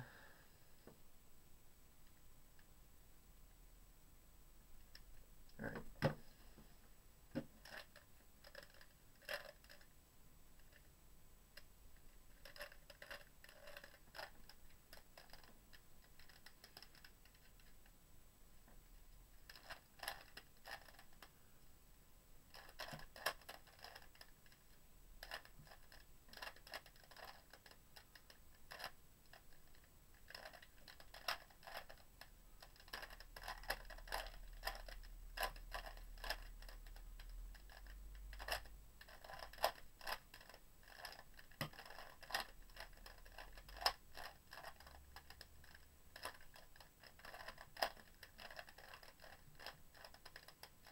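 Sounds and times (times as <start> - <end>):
puzzle cube plastic clicking: 7.4 - 9.9, 11.6 - 18.0, 19.4 - 21.3, 22.5 - 50.9.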